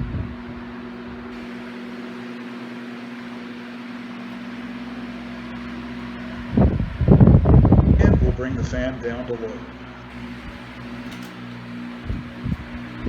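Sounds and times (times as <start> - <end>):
electric fan running: 0.0 - 13.0
loud low rumble: 5.5 - 11.0, 11.6 - 13.0.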